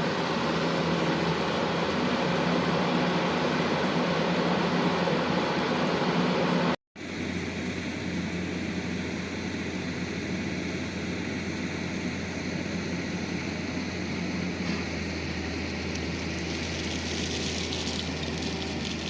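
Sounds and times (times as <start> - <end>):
heavy diesel engine running: 7.1 - 19.0.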